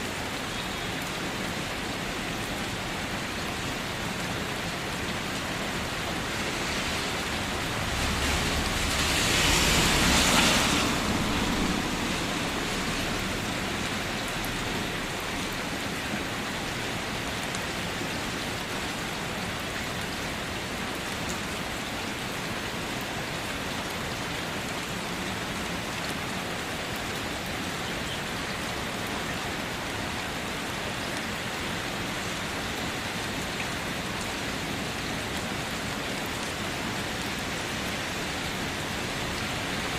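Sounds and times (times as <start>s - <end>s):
steady light rain: 0.0s - 39.9s
low rumble: 7.3s - 12.9s.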